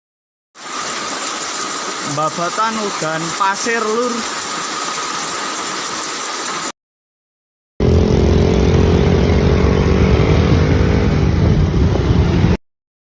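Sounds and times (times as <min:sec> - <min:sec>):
engine running: 0:07.8 - 0:12.6.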